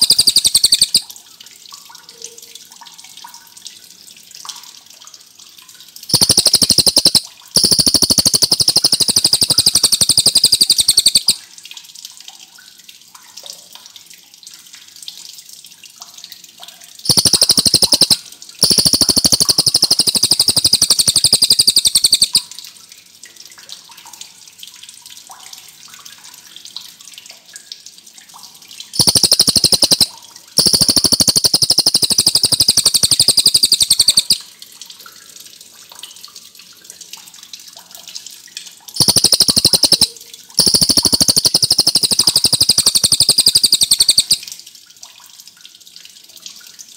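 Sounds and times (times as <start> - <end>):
songbird high fast trilling: 0.0 - 1.0, 6.1 - 11.4, 17.1 - 22.4, 29.0 - 34.4, 39.0 - 44.4.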